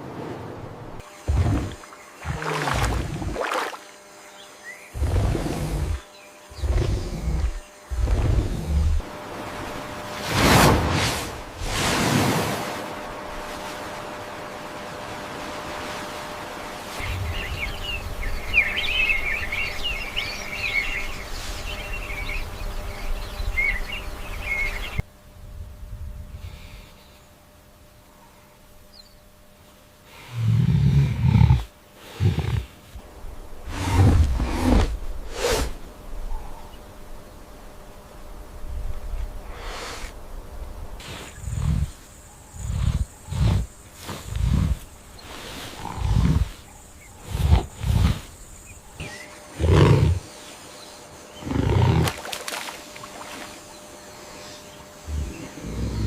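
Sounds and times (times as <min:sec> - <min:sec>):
large animal growling: 0:05.0 - 0:09.1, 0:45.4 - 0:48.3, 0:49.0 - 0:50.3, 0:51.4 - 0:52.2, 0:55.0 - 0:56.0
large animal deep calls: 0:45.6 - 0:48.3, 0:55.0 - 0:56.0.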